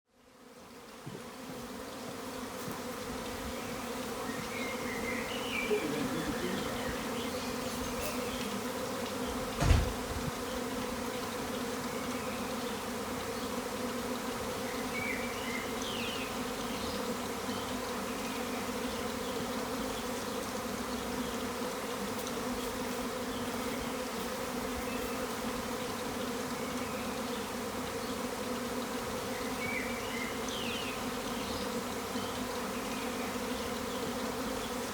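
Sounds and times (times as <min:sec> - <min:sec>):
bee swarm buzzing: 0:00.2 - 0:34.9
low thump: 0:09.6 - 0:10.2.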